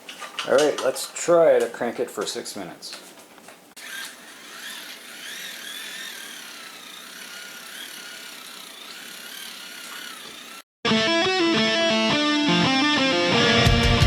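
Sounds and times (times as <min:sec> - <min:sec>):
hand-crank dynamo whirring: 0:03.8 - 0:10.7.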